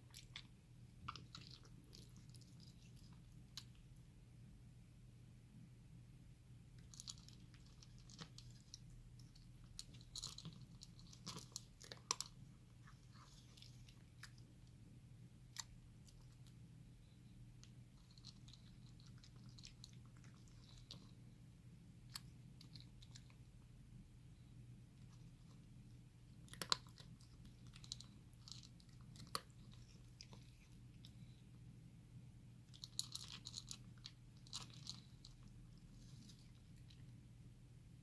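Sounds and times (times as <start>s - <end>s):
cat crunching food: 0.0s - 3.8s, 6.8s - 14.7s, 17.7s - 21.2s, 22.0s - 23.5s, 25.0s - 31.4s, 32.6s - 37.2s
low steady hum: 0.0s - 38.0s.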